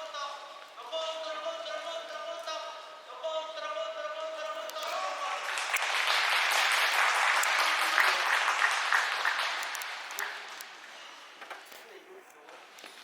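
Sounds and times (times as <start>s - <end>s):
audience applauding: 5.0s - 10.9s.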